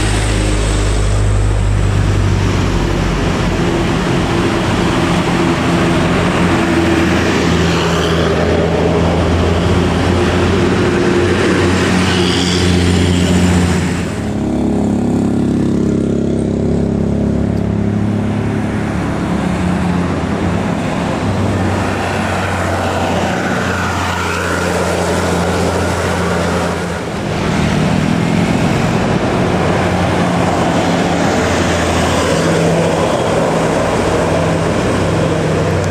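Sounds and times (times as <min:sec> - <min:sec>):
bus diesel engines labouring uphill: 0:00.0 - 0:35.9.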